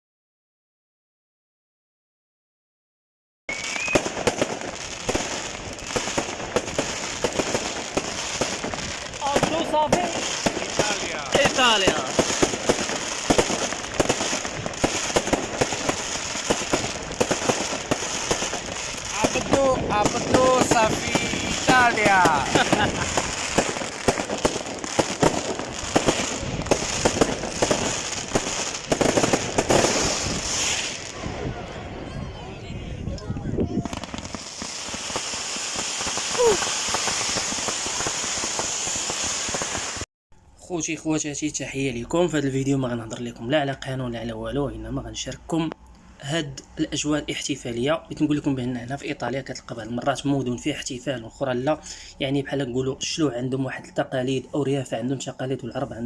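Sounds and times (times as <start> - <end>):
fireworks crackling hiss: 3.5 - 32.0, 33.6 - 40.1
fireworks cracks and bangs: 3.5 - 32.0, 33.6 - 40.0.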